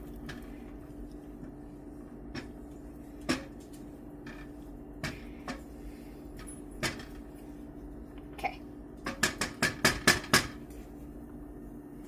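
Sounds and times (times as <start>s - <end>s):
steady low hum: 0.0s - 12.0s
utensil knocking on frying pan: 9.0s - 10.6s.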